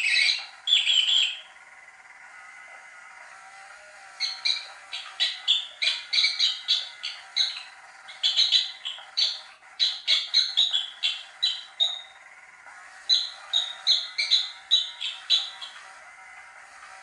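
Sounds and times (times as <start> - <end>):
high electronic chirps: 4.2 - 12.2, 13.0 - 15.9.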